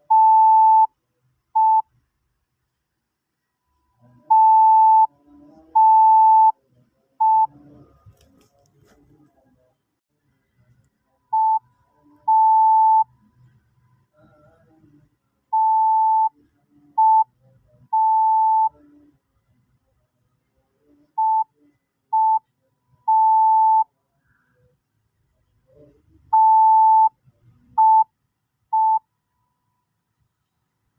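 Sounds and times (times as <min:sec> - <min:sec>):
morse code beeps: 0:23.1 - 0:23.9, 0:27.8 - 0:28.1, 0:28.8 - 0:29.0.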